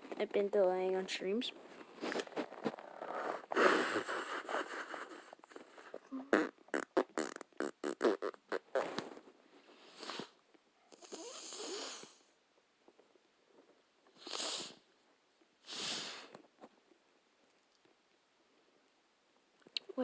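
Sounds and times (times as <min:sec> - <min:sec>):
person breathing close to microphone: 0:01.6 - 0:06.1.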